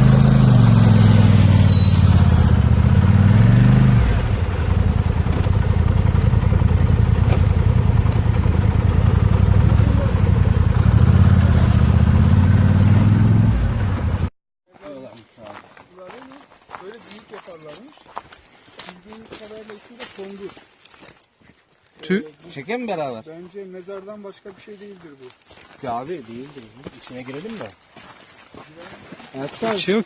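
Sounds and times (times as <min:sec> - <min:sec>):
atv engine running: 0:00.0 - 0:14.3.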